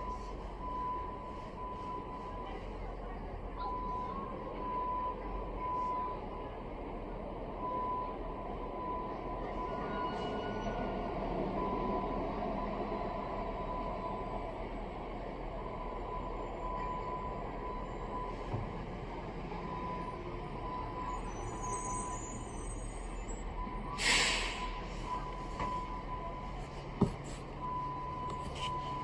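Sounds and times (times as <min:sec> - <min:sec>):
burst of hiss: 0:24.0 - 0:24.6.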